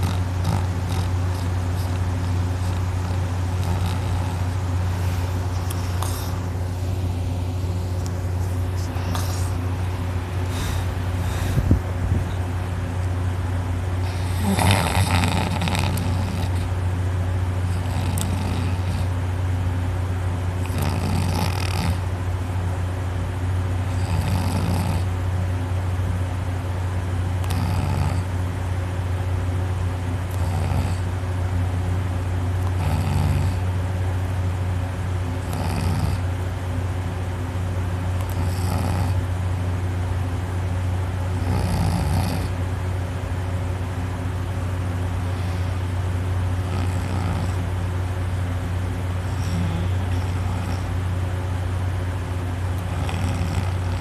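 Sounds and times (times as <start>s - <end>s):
woman snoring heavily: 0.0s - 6.9s, 14.0s - 16.7s, 17.6s - 19.1s, 20.6s - 22.0s, 23.9s - 25.1s, 27.4s - 28.3s, 30.3s - 31.1s, 32.7s - 33.6s, 35.4s - 36.2s, 38.3s - 39.2s, 41.4s - 42.6s, 46.6s - 47.6s, 49.3s - 50.9s, 52.8s - 54.0s
steady low hum: 0.0s - 54.0s.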